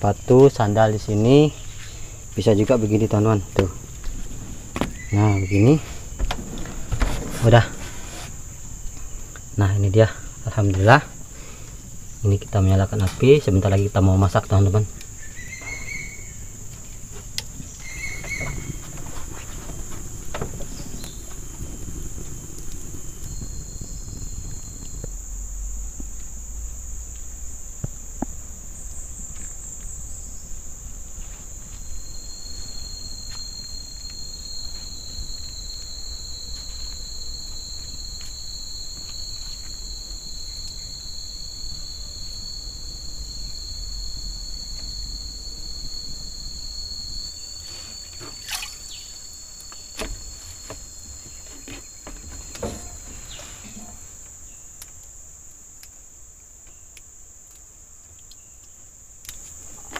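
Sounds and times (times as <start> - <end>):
high-pitched insect drone: 0.0 - 54.8
lower insect drone: 0.0 - 59.9.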